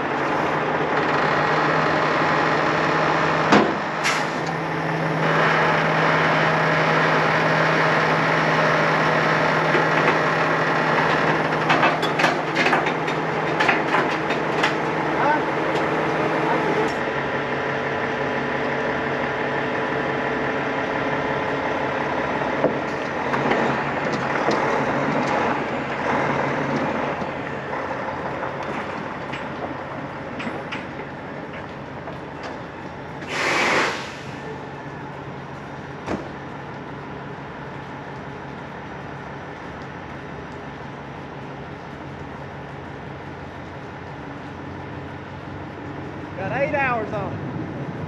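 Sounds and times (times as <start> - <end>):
diesel engine running: 0.0 - 48.0
air hiss: 33.2 - 34.4.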